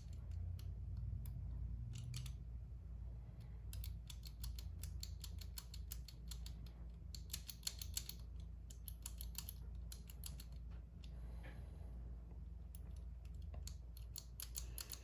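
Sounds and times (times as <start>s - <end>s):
padlock number wheels clicking: 0.0s - 2.6s, 3.3s - 10.7s, 12.7s - 15.0s.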